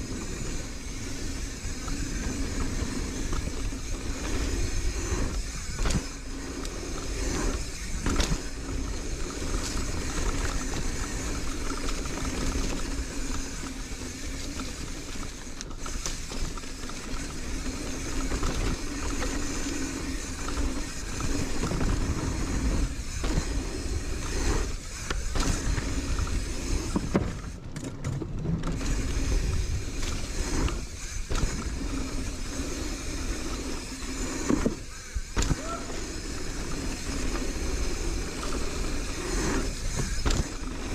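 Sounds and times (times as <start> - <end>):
bike rattling over bumps: 0.0 - 40.9
tyres rumbling on dirt: 0.0 - 40.9.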